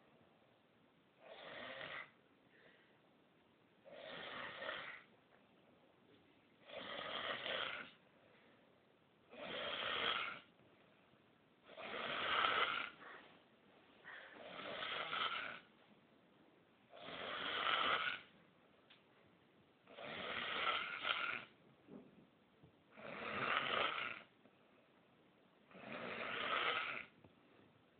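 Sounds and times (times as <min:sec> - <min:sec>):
rasping snores: 0:01.2 - 0:02.2, 0:03.9 - 0:05.1, 0:06.6 - 0:08.0, 0:09.3 - 0:10.5, 0:11.7 - 0:13.1, 0:14.3 - 0:15.7, 0:17.0 - 0:18.3, 0:19.9 - 0:21.6, 0:23.0 - 0:24.3, 0:25.7 - 0:27.2.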